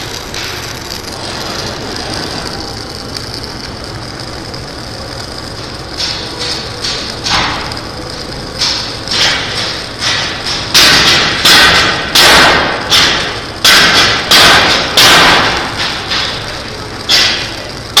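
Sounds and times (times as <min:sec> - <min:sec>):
knocks on steel: 0:08.6 - 0:16.3.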